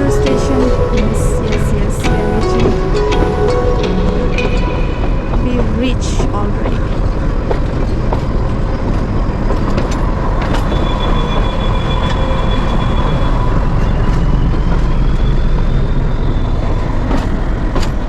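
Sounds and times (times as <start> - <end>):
train wheels rumbling on rail: 4.0 - 18.0
metal wheels squealing: 9.9 - 17.4.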